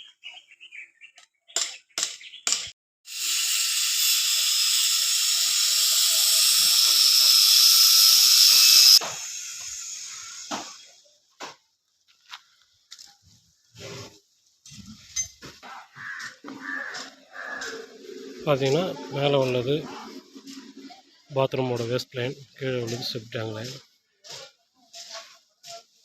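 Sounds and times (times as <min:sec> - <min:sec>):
loud steady hiss: 0:03.1 - 0:11.0.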